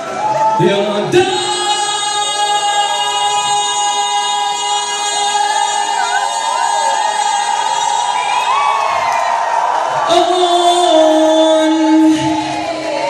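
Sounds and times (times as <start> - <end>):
many voices singing: 10.0 - 13.0.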